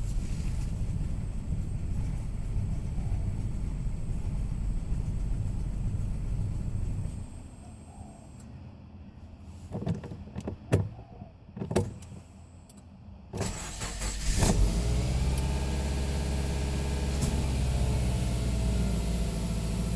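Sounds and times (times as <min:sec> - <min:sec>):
car engine starting and idling roughly: 0:00.0 - 0:07.6, 0:13.4 - 0:19.9.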